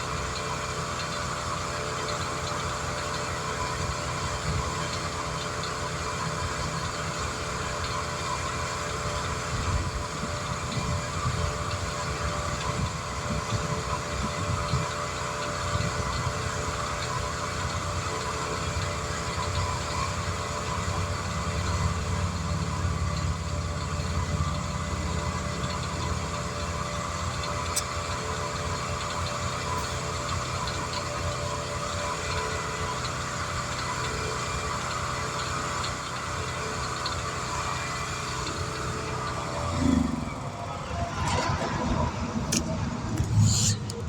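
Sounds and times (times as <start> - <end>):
engine idling: 0.0 - 44.0.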